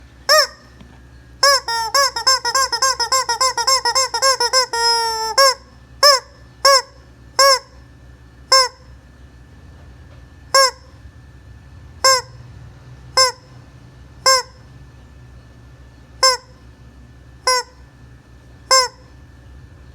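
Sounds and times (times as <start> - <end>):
rubber chicken toy squeaking: 0.3 - 0.8, 1.4 - 7.8, 8.5 - 8.9, 10.6 - 10.9, 12.0 - 12.3, 13.2 - 13.5, 14.2 - 14.6, 16.2 - 16.6, 17.5 - 17.8, 18.7 - 19.1.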